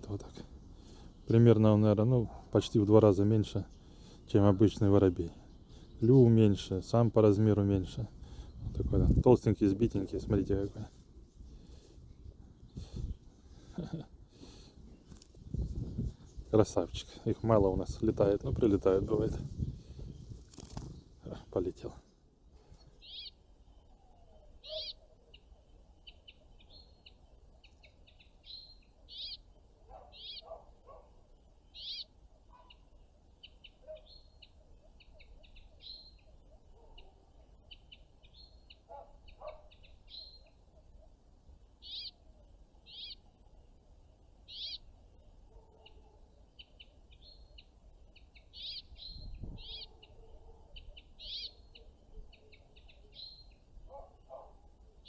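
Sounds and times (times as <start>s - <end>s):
songbirds chirping: 0.0s - 55.0s.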